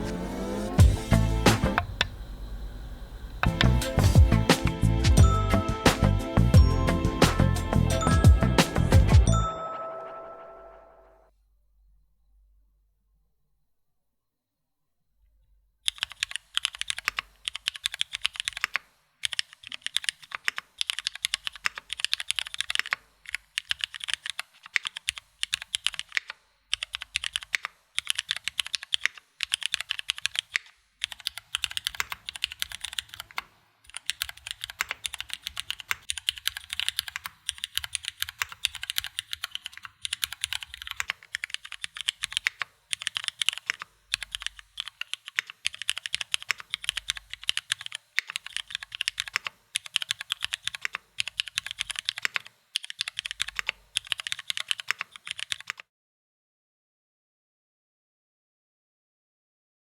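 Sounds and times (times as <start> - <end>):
mechanical keyboard typing: 3.4 - 4.8, 15.9 - 55.8.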